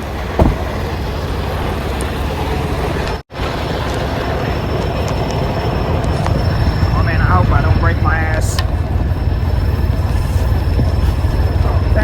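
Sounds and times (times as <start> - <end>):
diesel truck engine idling: 0.0 - 3.1.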